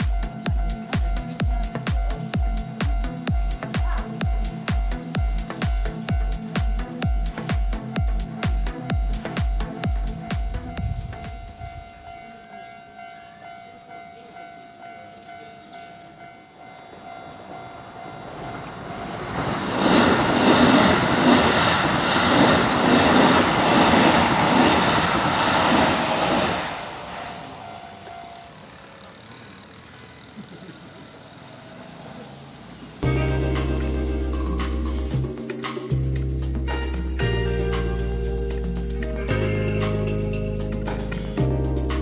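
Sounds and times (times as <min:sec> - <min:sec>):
music: 0:00.0 - 0:11.8, 0:33.0 - 0:42.0
electric train rumble: 0:00.0 - 0:42.0
level-crossing bell ringing: 0:08.0 - 0:19.0.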